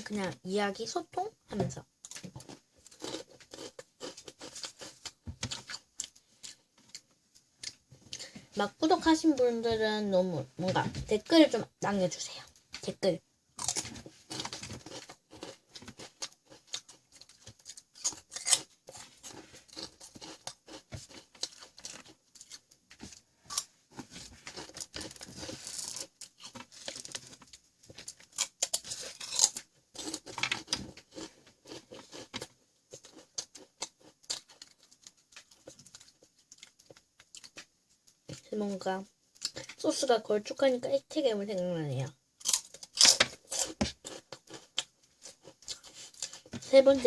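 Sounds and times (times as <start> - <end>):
crunching snacks: 13.6 - 22.6, 28.0 - 37.6, 42.4 - 46.4.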